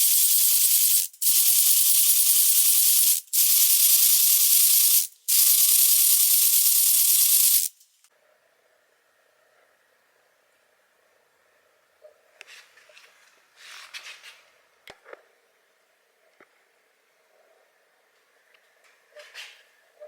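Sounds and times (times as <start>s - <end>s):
loud hissing bursts: 0.0s - 7.8s.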